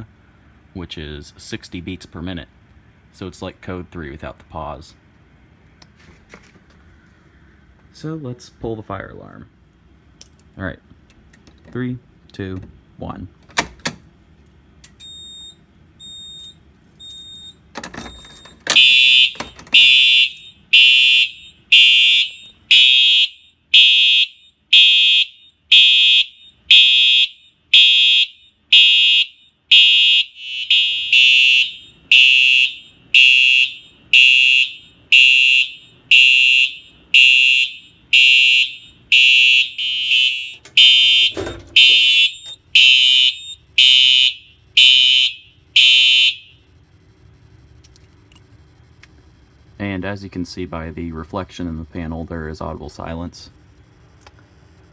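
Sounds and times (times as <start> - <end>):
fire alarm horn blasts: 15.0 - 46.8
clunk: 40.5 - 42.6.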